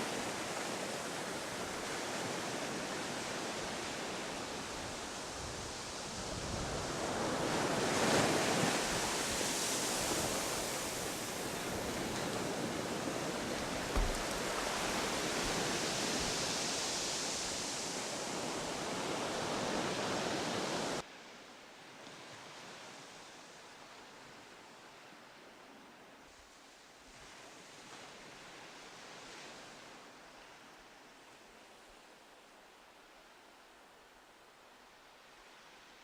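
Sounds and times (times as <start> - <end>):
low wind bump on microphone: 0.0 - 21.0
ocean surf washing ashore: 0.0 - 21.1.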